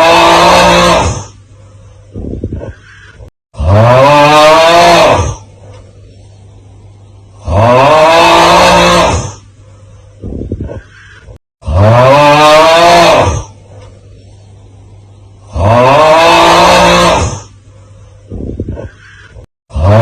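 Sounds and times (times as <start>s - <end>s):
drawn-out vocal snore: 0.0s - 1.4s, 3.6s - 5.5s, 7.4s - 9.4s, 11.6s - 13.6s, 15.4s - 17.5s, 19.7s - 20.0s.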